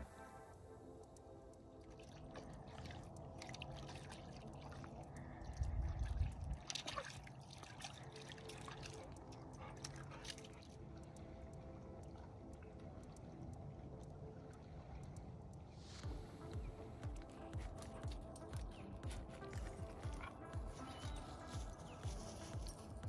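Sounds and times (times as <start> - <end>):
small waves lapping: 0.0 - 23.0
little splashes: 0.2 - 23.0.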